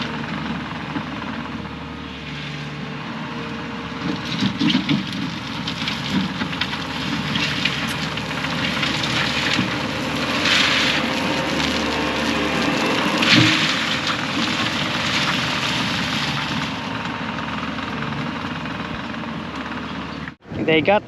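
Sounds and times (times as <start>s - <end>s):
excavator engine running: 0.0s - 21.0s
dirt and gravel being moved: 4.2s - 17.0s.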